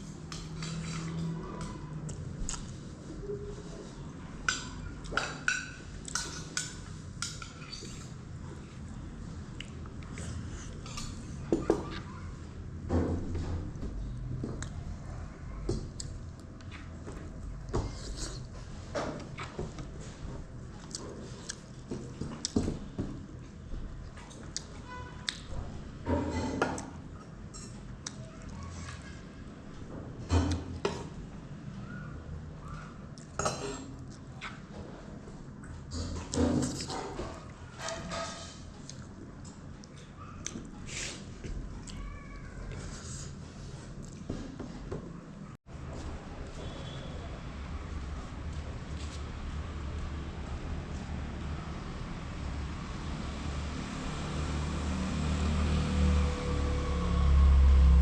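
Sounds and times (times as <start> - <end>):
dishes and spoons clinking: 4.5 - 8.1.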